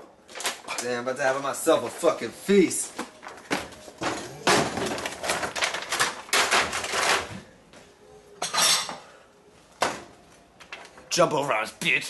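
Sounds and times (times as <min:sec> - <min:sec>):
food containers clattering: 0:02.8 - 0:07.5.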